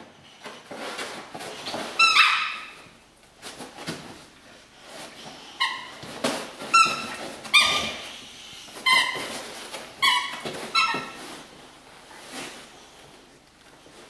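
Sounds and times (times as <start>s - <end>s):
squeaky toy squeaks: 2.0s - 2.8s, 6.6s - 8.1s, 8.8s - 9.4s, 10.0s - 11.2s.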